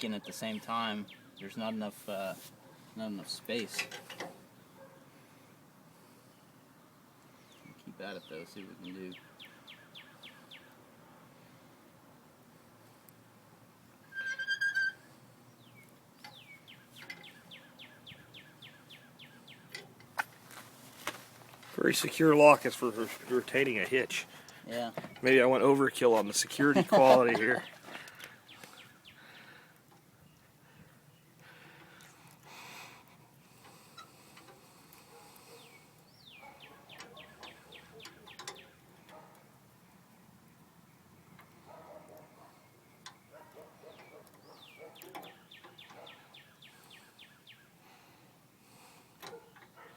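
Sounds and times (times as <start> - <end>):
soft rustle: 1.9 - 3.0, 20.2 - 25.3
bird calls: 7.3 - 10.8, 14.1 - 20.0, 26.6 - 32.0, 33.7 - 39.3, 41.6 - 48.0.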